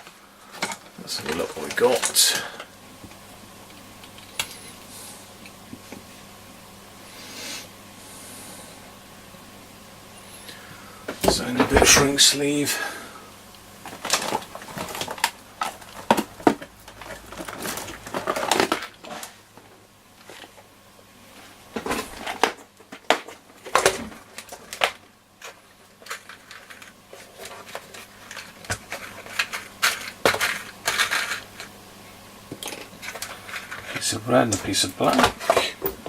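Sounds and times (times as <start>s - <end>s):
hands rustling plastic sleeving and wire: 0.0s - 6.3s, 13.6s - 36.0s.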